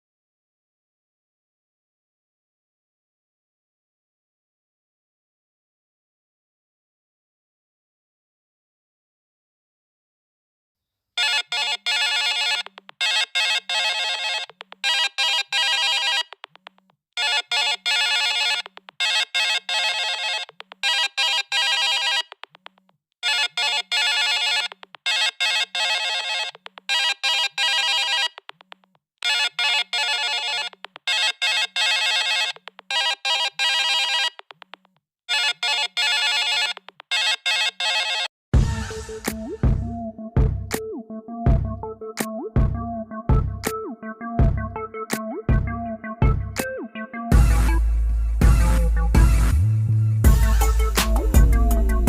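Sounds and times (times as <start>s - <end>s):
electronic ringtone melody: 11.2s - 16.4s, 17.2s - 22.4s, 23.2s - 28.5s, 29.2s - 34.5s, 35.3s - 47.8s, 50.3s - 52.0s.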